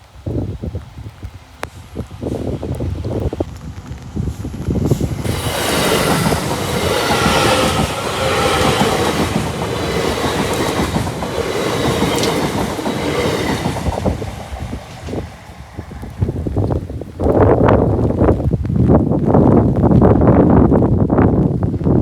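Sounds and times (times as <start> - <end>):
train passing: 0.4 - 17.4
whining tones: 1.6 - 15.2.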